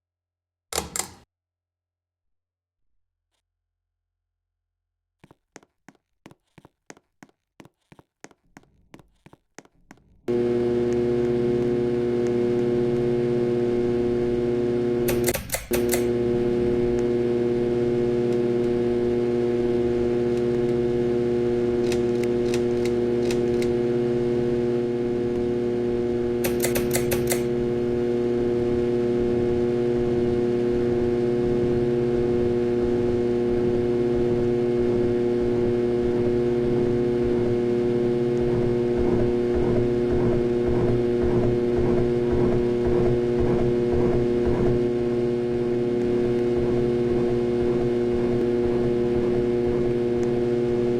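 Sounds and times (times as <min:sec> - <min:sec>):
ceiling fan humming loudly: 0:10.3 - 0:42.4
quick clicks: 0:15.0 - 0:16.2, 0:26.4 - 0:27.5.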